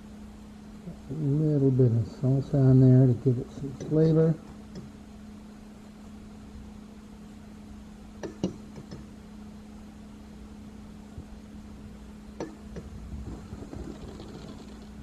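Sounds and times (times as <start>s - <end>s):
kitchen appliance humming: 11.6s - 15.0s.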